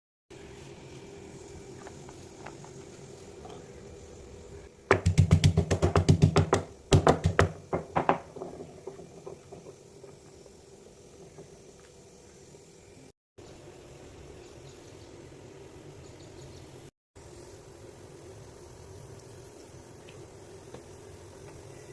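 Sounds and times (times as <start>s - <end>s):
fast hard knocks: 4.9s - 9.7s.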